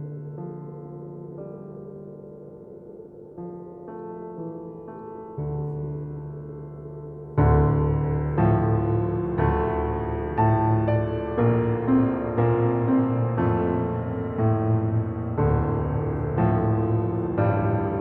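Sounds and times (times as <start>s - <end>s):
piano chords: 0.0s - 18.0s.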